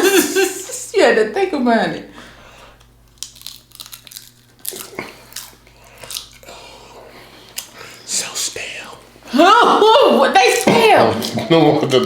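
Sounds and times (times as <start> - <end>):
people talking: 0.0 - 2.2, 9.3 - 12.0
crunchy snack chewing: 2.8 - 6.9.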